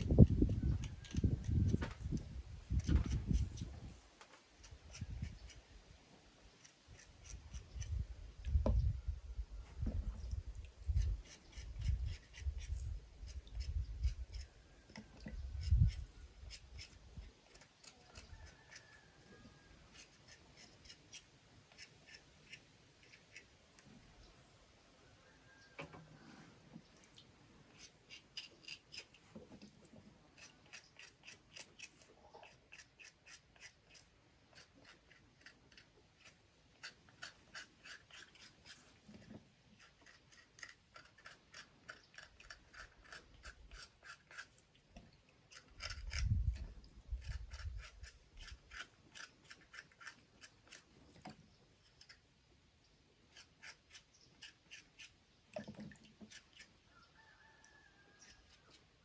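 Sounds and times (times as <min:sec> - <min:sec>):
knife cutting food: 0:45.5 - 0:46.6.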